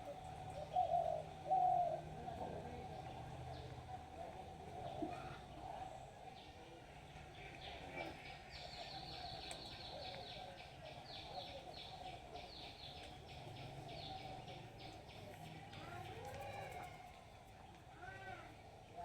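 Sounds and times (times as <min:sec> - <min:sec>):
outdoor background noise: 0:00.0 - 0:19.0
bird singing: 0:07.6 - 0:16.0.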